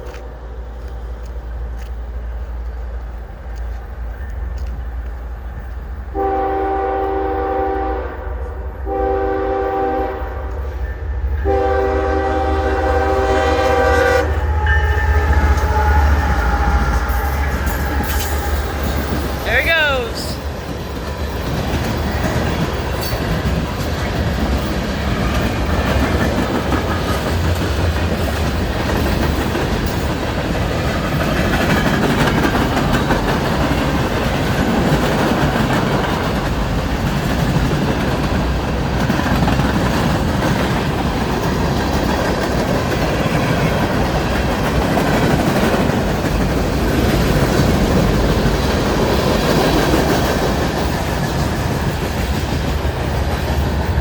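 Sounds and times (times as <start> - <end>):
train rumbling past: 0.0 - 54.0
wheels clacking over rail joints: 13.4 - 54.0.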